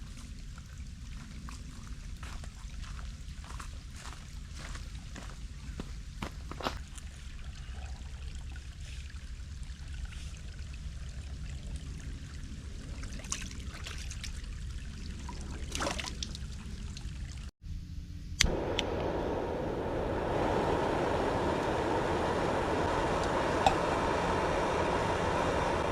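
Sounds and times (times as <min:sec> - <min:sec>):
low rumble: 0:17.7 - 0:25.9.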